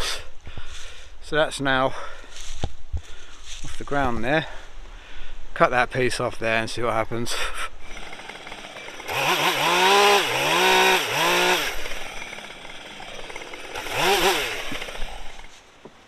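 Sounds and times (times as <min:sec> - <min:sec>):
chainsaw revving: 0:07.8 - 0:15.6.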